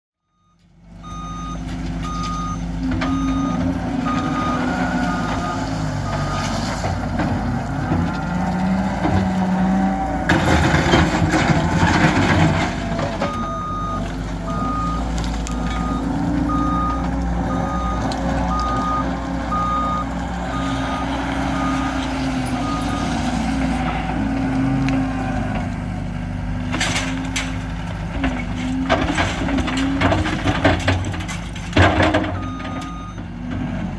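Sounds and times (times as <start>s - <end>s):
reversing alarm beeping: 0.2s - 6.6s, 13.2s - 23.2s, 32.0s - 33.2s
diesel heavy equipment revving: 0.7s - 33.9s
debris crashing and clattering: 3.0s - 20.0s, 26.6s - 33.0s.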